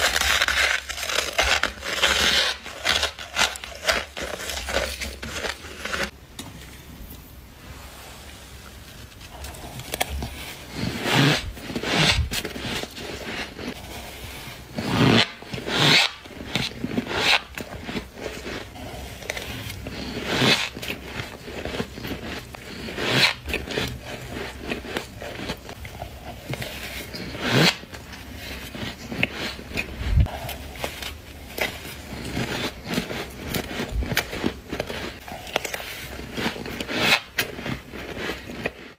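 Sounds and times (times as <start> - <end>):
crunchy bites into frost: 0.0 - 6.1.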